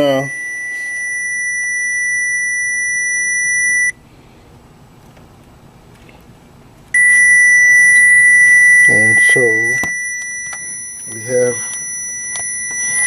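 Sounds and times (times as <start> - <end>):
high steady probe tone: 0.0 - 4.0, 7.0 - 13.0.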